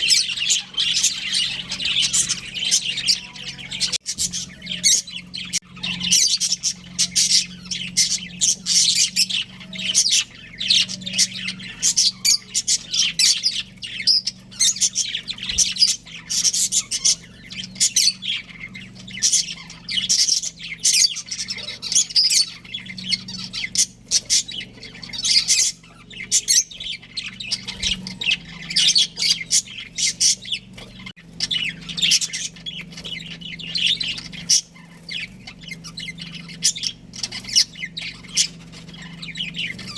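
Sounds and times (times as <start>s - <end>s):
budgerigars chirping: 0.0s - 39.9s
faint low hum: 0.0s - 39.9s.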